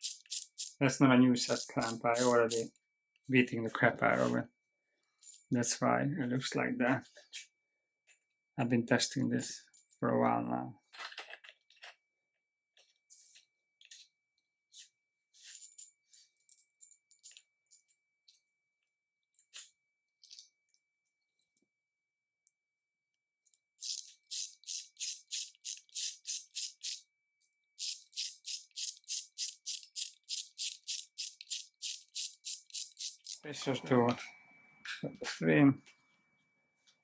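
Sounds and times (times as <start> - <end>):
hand ratchet strokes: 0.0 - 0.8, 1.5 - 2.7, 23.8 - 27.0, 27.8 - 33.5.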